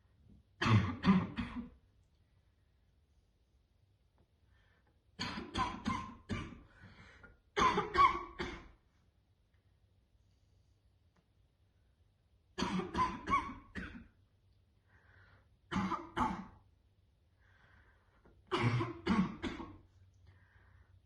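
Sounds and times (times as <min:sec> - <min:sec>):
woman coughing harshly: 0:00.6 - 0:01.8, 0:05.2 - 0:06.7, 0:07.6 - 0:08.8, 0:12.6 - 0:14.2, 0:15.7 - 0:16.6, 0:18.5 - 0:19.8
faint breaths: 0:06.6 - 0:07.4, 0:14.8 - 0:15.7, 0:17.3 - 0:18.4, 0:20.2 - 0:21.0.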